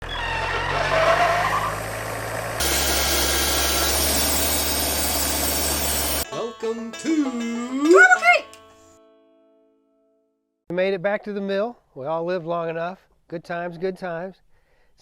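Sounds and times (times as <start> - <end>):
engine running: 0.5 - 6.2.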